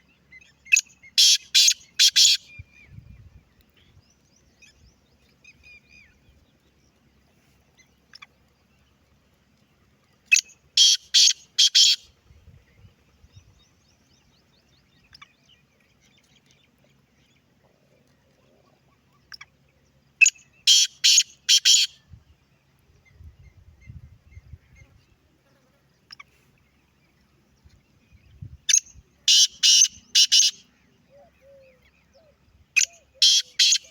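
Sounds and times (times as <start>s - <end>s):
francolin calling: 0.6s - 2.9s, 10.3s - 12.1s, 20.2s - 22.0s, 28.7s - 33.9s.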